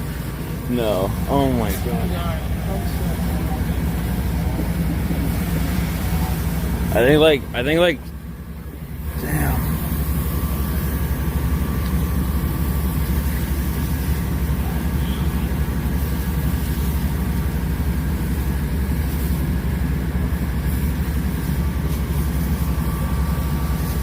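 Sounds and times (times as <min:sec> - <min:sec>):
vehicle engine running: 0:00.0 - 0:24.0.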